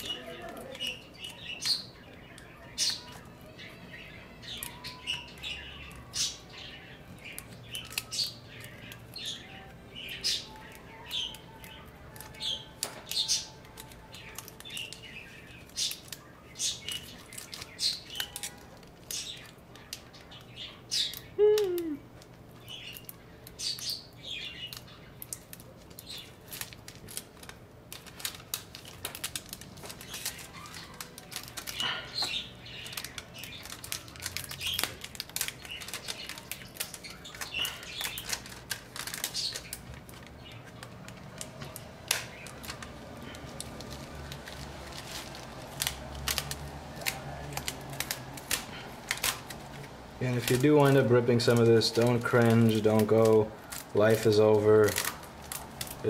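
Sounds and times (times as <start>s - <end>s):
adhesive sheet crackling as peeled: 10.4s - 20.4s, 24.6s - 56.0s.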